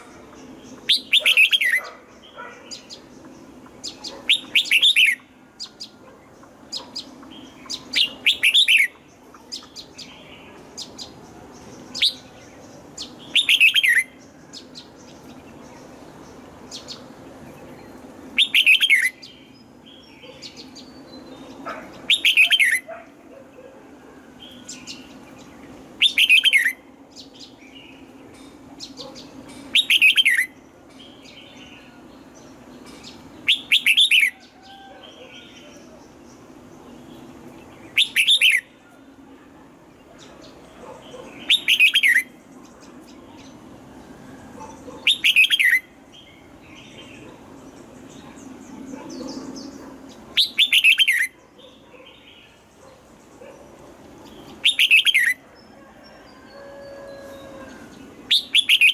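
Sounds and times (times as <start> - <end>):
bird chirps: 0.0 - 23.0, 24.4 - 39.0, 40.0 - 43.7, 44.6 - 55.6, 56.4 - 58.9.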